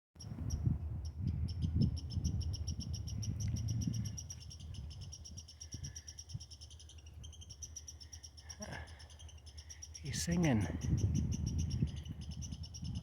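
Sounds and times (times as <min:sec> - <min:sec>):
low microphone rumble: 0:00.2 - 0:05.2, 0:10.1 - 0:13.0
squirrel alarm chirps: 0:00.2 - 0:13.0.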